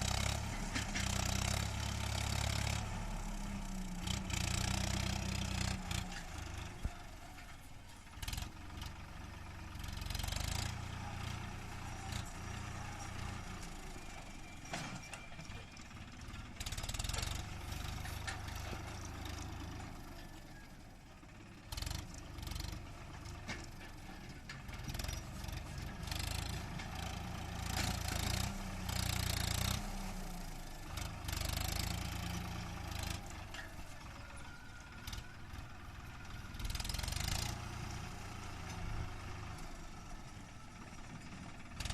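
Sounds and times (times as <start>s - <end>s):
clatter: 0.0s - 2.9s
tractor diesel engine running: 0.0s - 41.9s.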